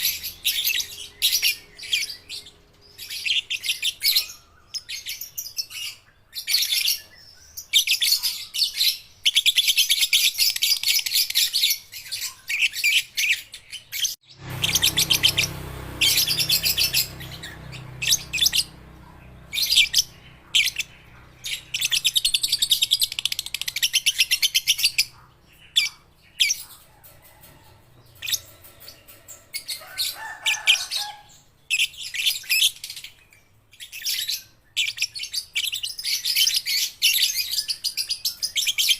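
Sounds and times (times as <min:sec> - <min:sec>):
low hum: 0:14.2 - 0:23.7
lovebirds chattering trills: 0:14.3 - 0:33.1.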